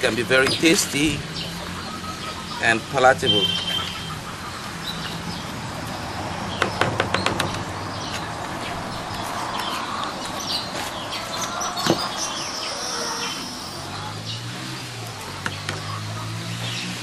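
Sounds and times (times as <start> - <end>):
outdoor background noise: 0.0 - 17.0
small birds chirping: 0.0 - 17.0
sharp clicks and knocks: 6.6 - 8.2.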